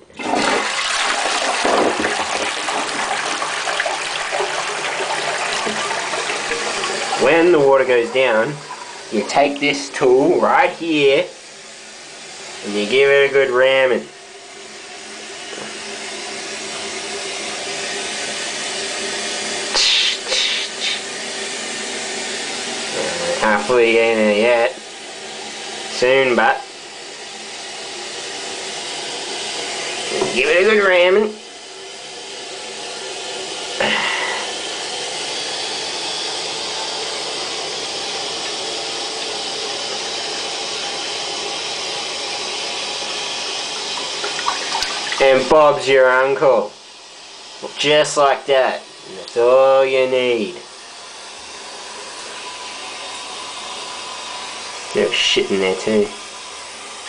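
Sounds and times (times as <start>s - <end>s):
toilet plunger splashes: 0.0s - 10.7s, 37.2s - 46.4s
water running in a toilet: 0.0s - 57.0s.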